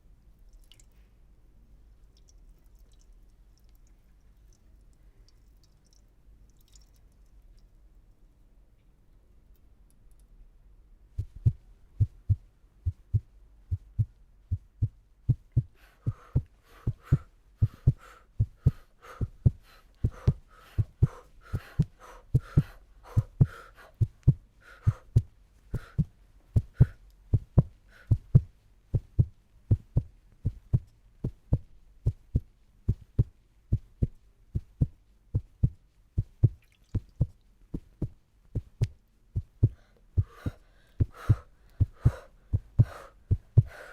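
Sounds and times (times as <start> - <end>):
heartbeat thumps: 11.1 - 43.8.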